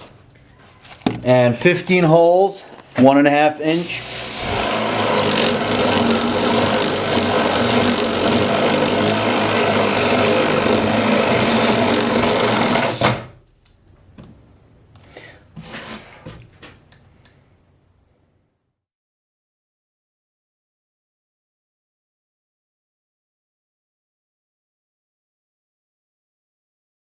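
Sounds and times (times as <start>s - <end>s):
drill boring into wood: 3.6s - 13.3s.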